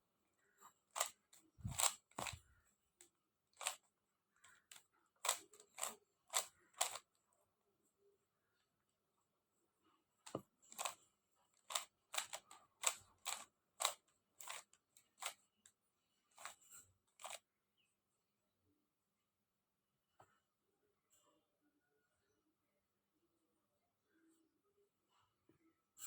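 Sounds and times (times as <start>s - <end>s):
puzzle cube layers clacking: 1.0s - 2.4s, 11.6s - 15.3s.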